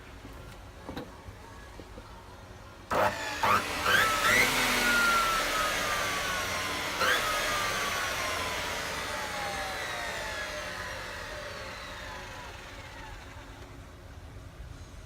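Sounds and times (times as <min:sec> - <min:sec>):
saw squeals: 0:02.9 - 0:11.3
cutting saw whining: 0:02.9 - 0:13.9.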